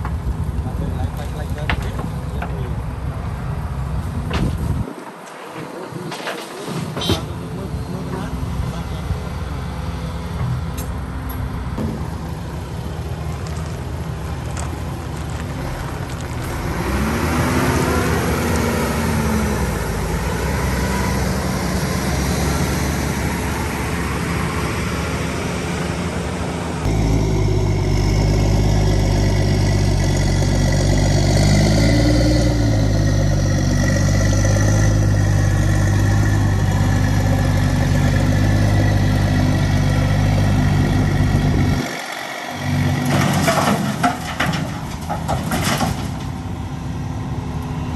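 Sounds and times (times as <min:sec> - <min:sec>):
heavy machinery engine revving: 0:14.6 - 0:46.6
deep engine note: 0:26.8 - 0:41.9.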